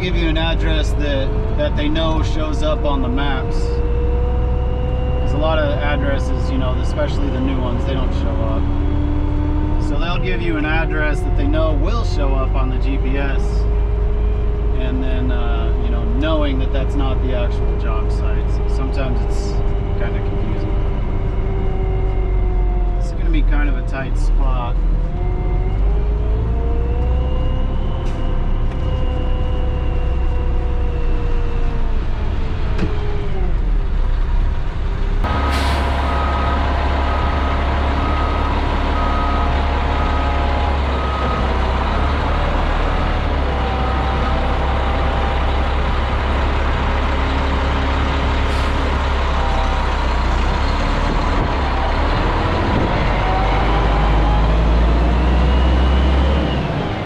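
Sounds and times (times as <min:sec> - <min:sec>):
truck diesel engine rumbling: 0:00.0 - 0:57.0
reversing beeper: 0:35.3 - 0:45.7, 0:48.5 - 0:57.0.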